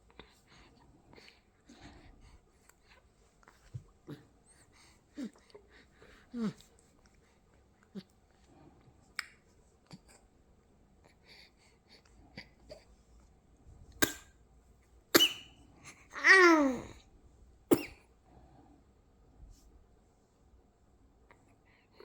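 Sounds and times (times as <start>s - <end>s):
small sneezes: 14.0s - 14.3s, 15.1s - 15.6s, 17.7s - 18.1s.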